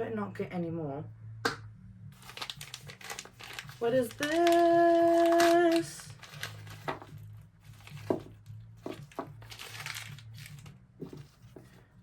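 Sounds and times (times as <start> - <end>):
plastic packaging crinkling: 2.2 - 11.2.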